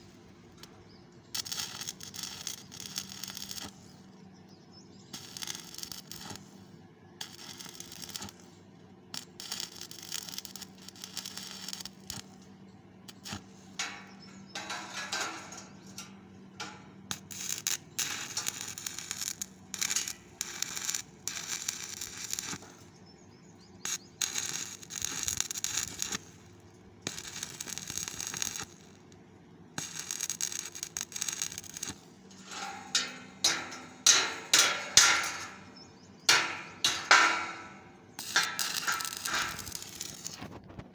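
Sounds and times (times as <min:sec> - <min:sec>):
electric arc welding crackling: 0:01.3 - 0:03.8, 0:05.2 - 0:06.5, 0:07.2 - 0:08.5, 0:09.2 - 0:12.4, 0:13.1 - 0:23.0, 0:23.8 - 0:29.1, 0:29.8 - 0:40.8
hammer strikes on metal: 0:13.8 - 0:16.9, 0:32.4 - 0:39.6.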